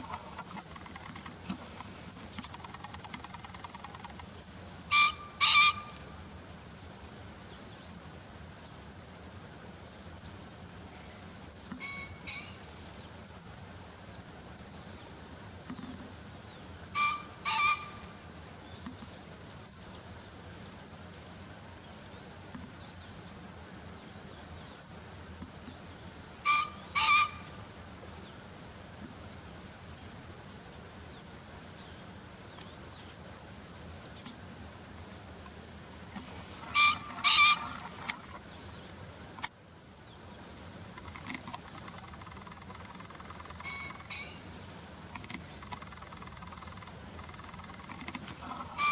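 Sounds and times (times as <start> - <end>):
sharp clicks: 0.0 - 4.3, 40.9 - 44.1, 45.1 - 48.5
small birds chirping: 0.0 - 4.9, 10.2 - 48.9
pheasant crowing: 4.9 - 6.0, 11.8 - 12.6, 16.9 - 18.2, 26.4 - 27.7, 36.1 - 38.8, 41.0 - 44.5, 45.2 - 48.9.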